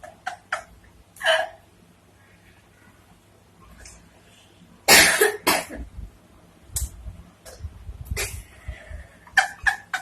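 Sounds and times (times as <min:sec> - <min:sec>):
woman coughing: 0:04.9 - 0:05.8.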